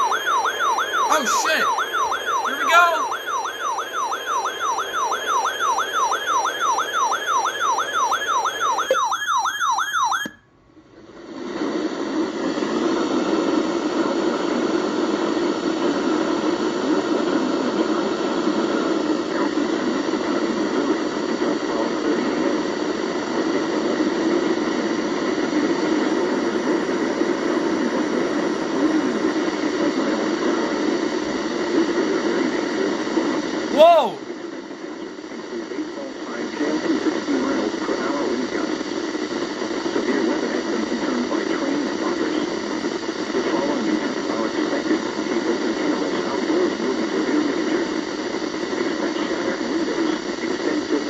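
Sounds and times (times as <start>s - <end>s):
warbling alert siren: 0.0s - 10.4s.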